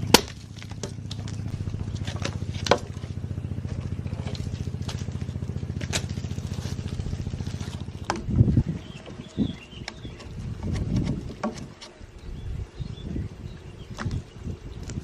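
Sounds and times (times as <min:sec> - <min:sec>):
small motor running: 0:00.0 - 0:11.8.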